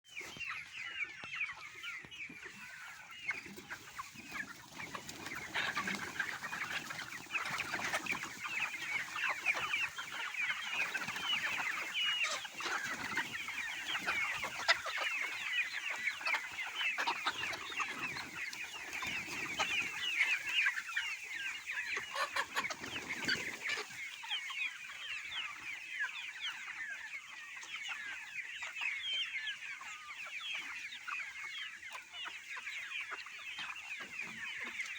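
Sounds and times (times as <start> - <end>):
chickens calling and clucking: 0.1 - 34.9.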